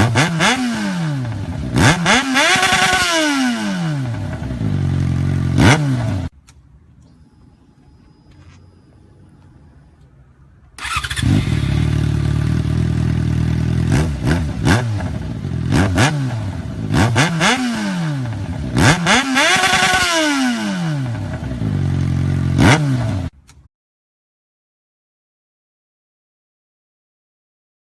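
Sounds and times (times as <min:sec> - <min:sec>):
motorcycle engine revving: 0:00.0 - 0:06.3, 0:10.8 - 0:23.4.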